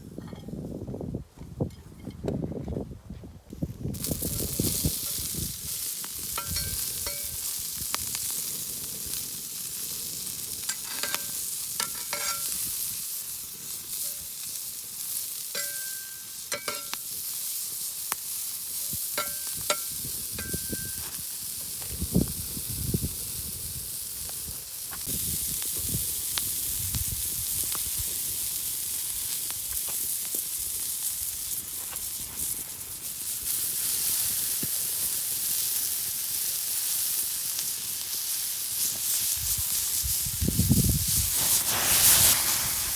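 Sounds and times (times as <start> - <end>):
steak sizzling in a pan: 3.9 - 42.9
utensil clinking and scraping pan: 6.3 - 7.4, 10.7 - 12.6, 15.6 - 17.0, 19.2 - 21.0.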